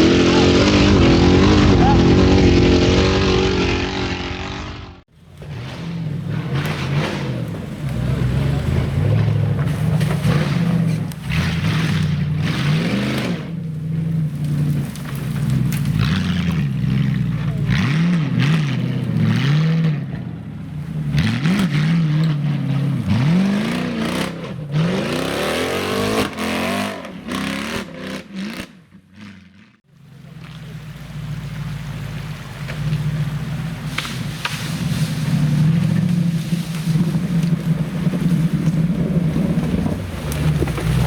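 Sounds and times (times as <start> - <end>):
off-road vehicle engine revving: 0.0 - 41.0.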